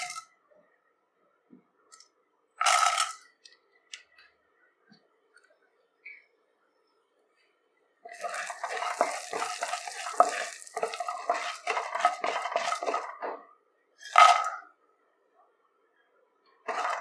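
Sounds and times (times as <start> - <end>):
spoon scraping metal pan: 8.1 - 13.4.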